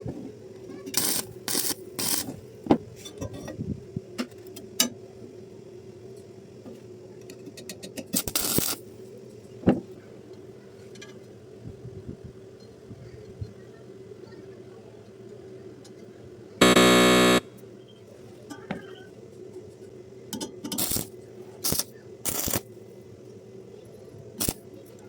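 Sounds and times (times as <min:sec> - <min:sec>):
welding arc hissing: 0:01.0 - 0:02.3, 0:08.2 - 0:08.8, 0:16.6 - 0:17.4, 0:20.8 - 0:22.7, 0:24.4 - 0:24.6
electrical hum: 0:16.6 - 0:17.5.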